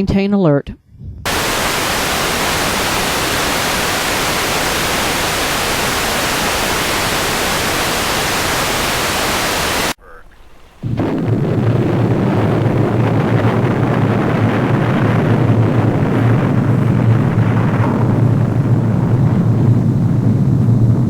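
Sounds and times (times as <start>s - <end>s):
hiss: 1.3s - 10.0s
loud steady low rumble: 1.3s - 21.0s.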